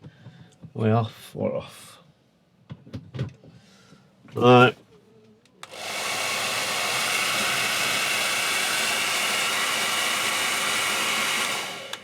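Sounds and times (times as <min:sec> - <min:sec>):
hairdryer switch click: 0:05.6 - 0:06.3, 0:08.2 - 0:12.0
hairdryer blowing air: 0:05.6 - 0:12.0.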